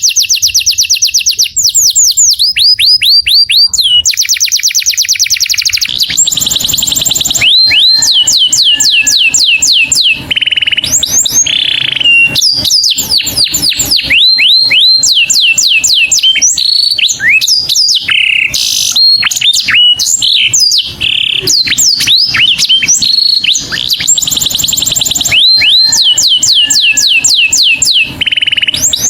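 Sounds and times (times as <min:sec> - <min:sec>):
canary singing: 0:00.0 - 0:29.0.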